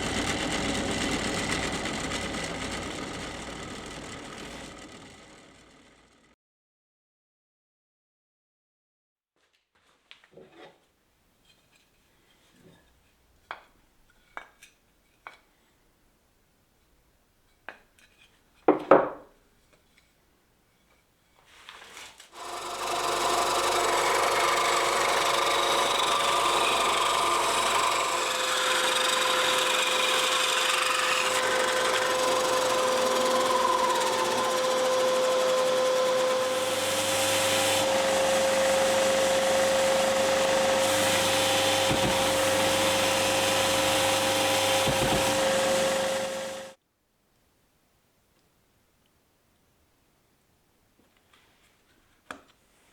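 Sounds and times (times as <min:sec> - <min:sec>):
electric power tool humming: 0:00.0 - 0:06.2, 0:22.4 - 0:46.8.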